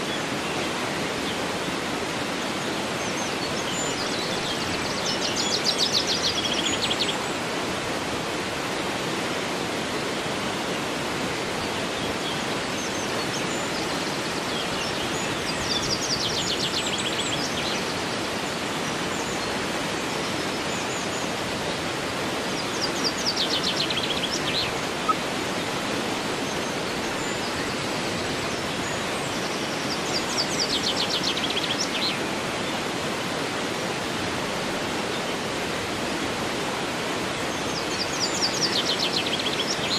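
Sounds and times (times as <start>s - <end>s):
distant waterfall: 0.0s - 39.9s
river rushing: 0.0s - 39.9s
songbird trilling: 22.8s - 25.2s.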